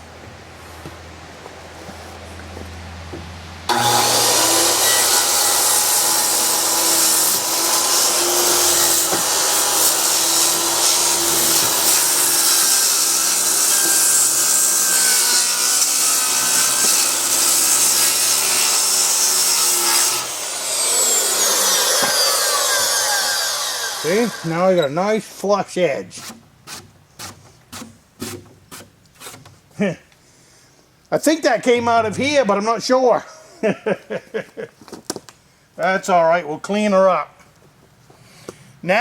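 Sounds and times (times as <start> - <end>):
saw blade winding down: 3.7 - 24.8
power saw cutting wood: 3.7 - 24.9.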